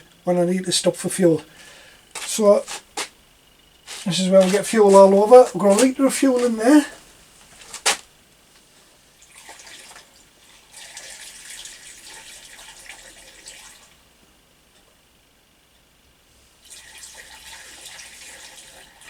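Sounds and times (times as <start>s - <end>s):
petrol pouring into tank: 16.6s - 19.0s.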